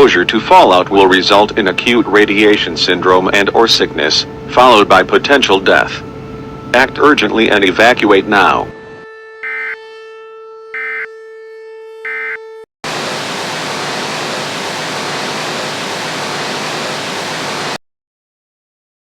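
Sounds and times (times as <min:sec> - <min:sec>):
loud static hiss: 0:12.9 - 0:17.8
steady droning tone: 0:12.9 - 0:17.8.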